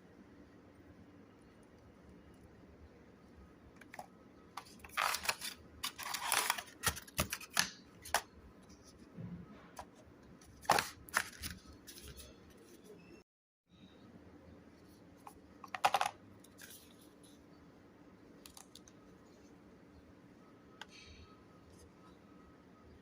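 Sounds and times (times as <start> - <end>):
packaging rustling and scraping: 3.8 - 9.0, 9.8 - 12.9.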